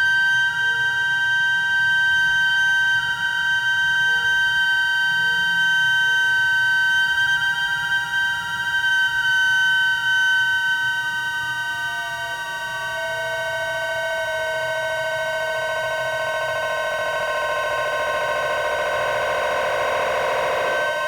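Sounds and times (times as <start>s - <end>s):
synthesizer drone tones: 16.4s - 21.0s.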